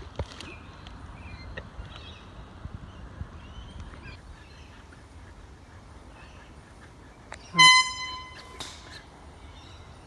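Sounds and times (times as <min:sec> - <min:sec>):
wind rumbling on microphone: 0:00.0 - 0:05.5.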